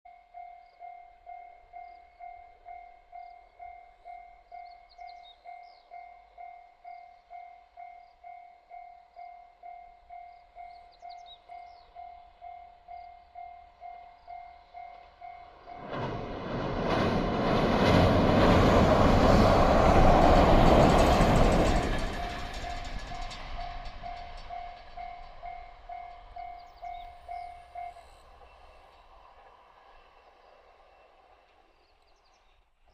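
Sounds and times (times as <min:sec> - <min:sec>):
level-crossing warning bell: 0:00.1 - 0:16.3, 0:20.4 - 0:29.0
train passing loudly: 0:01.8 - 0:32.1.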